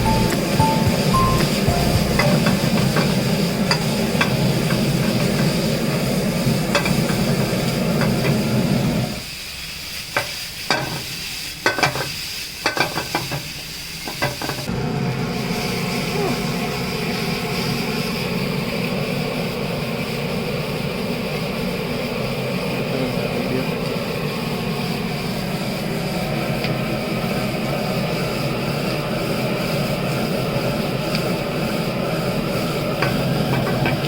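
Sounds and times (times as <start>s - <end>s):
food sizzling in a pan: 0.0s - 34.0s
stirring knocks in a pan: 10.2s - 13.5s, 33.0s - 34.0s.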